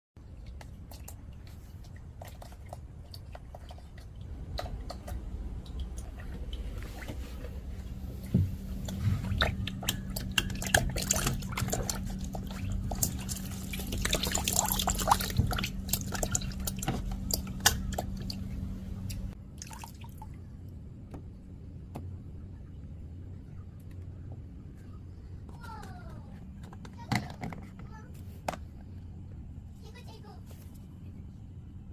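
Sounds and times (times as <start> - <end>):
water dripping and splashing: 0.2 - 7.5, 8.3 - 20.4
steady low hum: 0.2 - 31.9.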